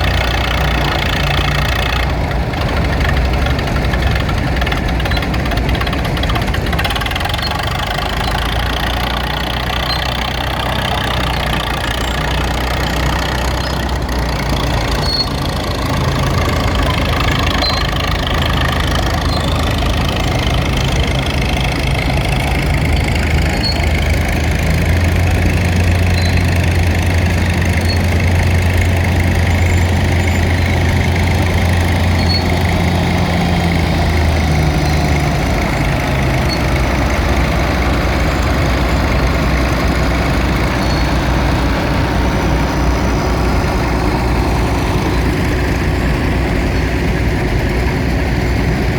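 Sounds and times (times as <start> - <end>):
tractor engines running: 0.0 - 48.9.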